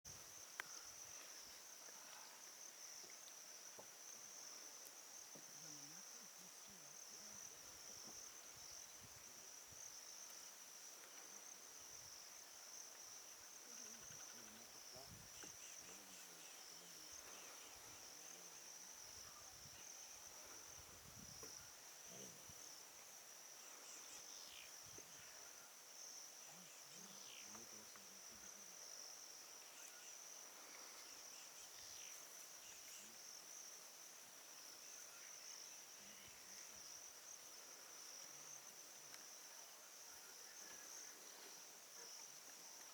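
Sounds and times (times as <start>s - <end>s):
insects chirping: 0.1s - 42.9s.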